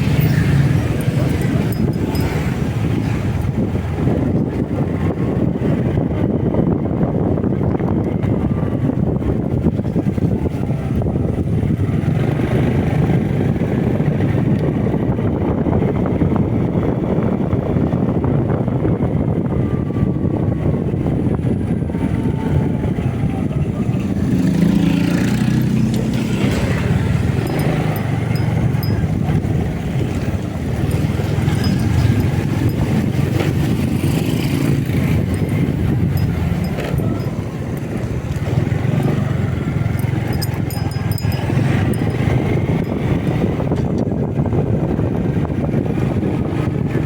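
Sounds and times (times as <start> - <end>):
motorcycle engine: 0.0 - 4.7, 23.4 - 44.2
wind rumble: 0.0 - 47.0.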